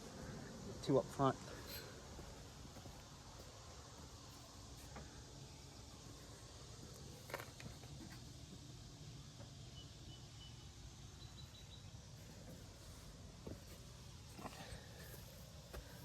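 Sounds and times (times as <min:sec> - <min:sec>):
faint outdoor hiss: 0:00.0 - 0:16.0
faint high chirps: 0:09.6 - 0:12.0.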